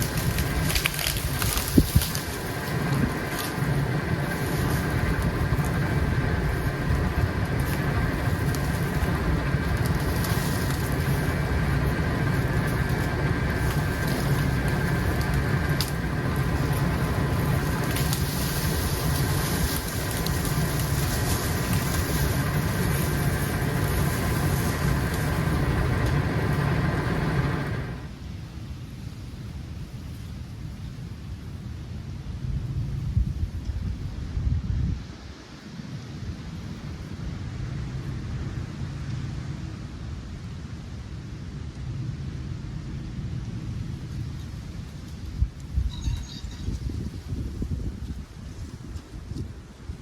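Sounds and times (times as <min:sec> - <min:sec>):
truck engine running: 0:00.0 - 0:28.1
tyres rolling over ground: 0:00.0 - 0:28.2.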